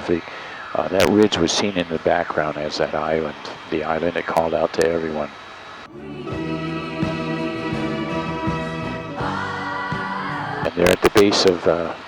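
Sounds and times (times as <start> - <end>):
background music with held chords: 5.9 - 11.6.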